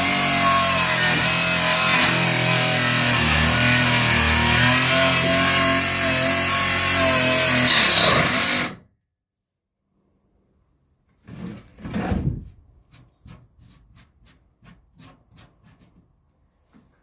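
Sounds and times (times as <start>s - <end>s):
electric saw cutting wood: 0.0s - 8.8s
wood scraping: 11.1s - 17.0s.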